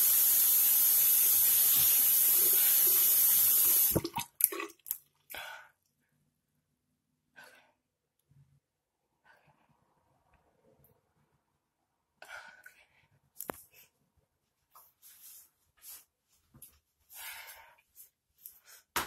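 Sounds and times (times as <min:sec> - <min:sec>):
loud steady hiss: 0:00.0 - 0:04.0.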